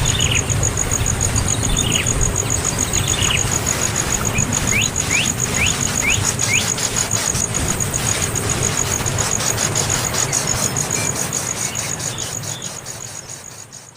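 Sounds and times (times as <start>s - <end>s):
bird chirping: 0.0s - 6.9s, 10.2s - 13.9s
fast high-pitched pulsing: 0.0s - 13.9s.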